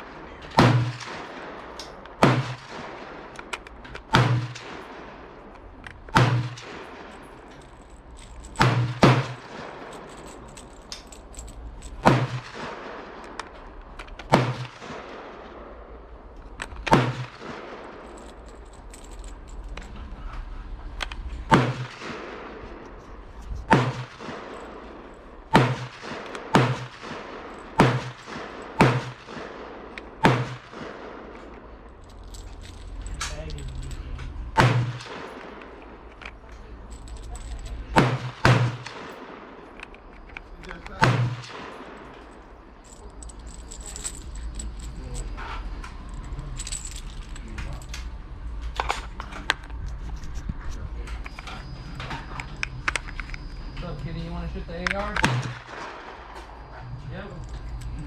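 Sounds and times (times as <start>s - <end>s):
gunshots with echo: 0.0s - 5.5s, 6.1s - 7.6s, 8.5s - 10.5s, 12.0s - 13.5s, 14.2s - 16.1s, 16.8s - 18.1s, 21.5s - 22.8s, 23.7s - 31.8s, 34.5s - 36.0s, 37.8s - 39.8s, 41.0s - 42.4s.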